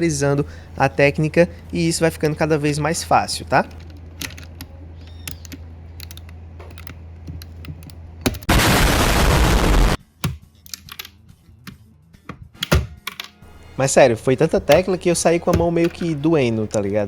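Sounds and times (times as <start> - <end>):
loud rush of noise: 8.5 - 10.0.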